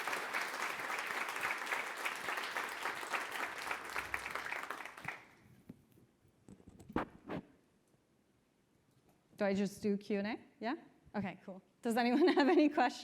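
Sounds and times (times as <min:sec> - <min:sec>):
audience applauding: 0:00.0 - 0:05.4.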